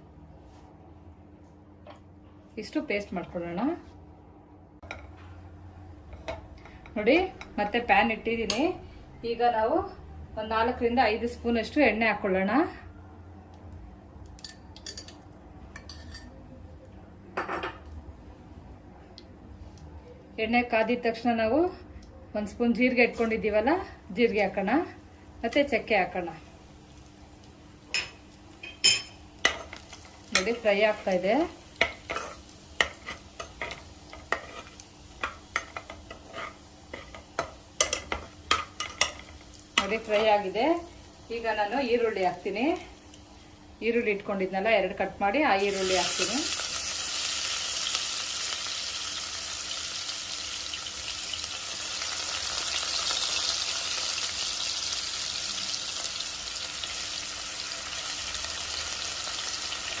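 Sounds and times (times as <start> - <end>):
spices sizzling in hot oil: 23.0 - 60.0.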